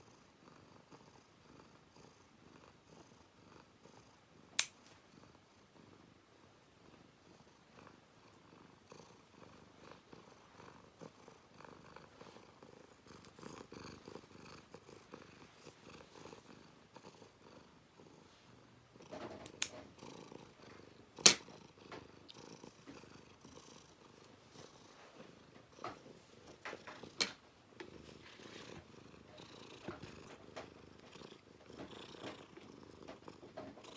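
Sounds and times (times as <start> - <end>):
cat purring: 0.0 - 33.9
nail clipper clicks: 4.6 - 4.8, 19.4 - 19.7, 21.2 - 21.4.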